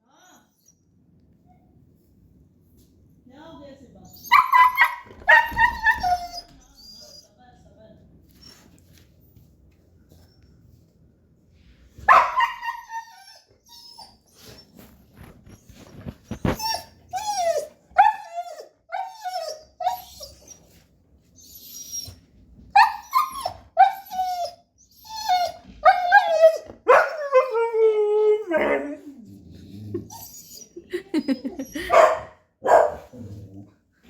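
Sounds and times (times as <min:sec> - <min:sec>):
dog whining: 0:04.1 - 0:07.3, 0:12.1 - 0:14.8, 0:15.4 - 0:20.8, 0:21.4 - 0:33.7.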